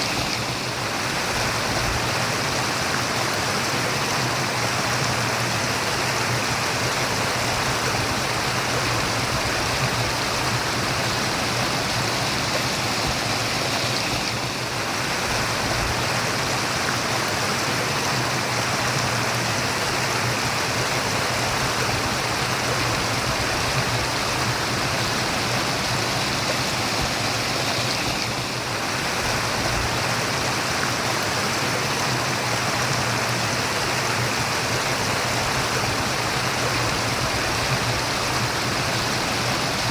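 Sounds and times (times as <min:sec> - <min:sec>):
running water murmuring: 0:00.0 - 0:39.9.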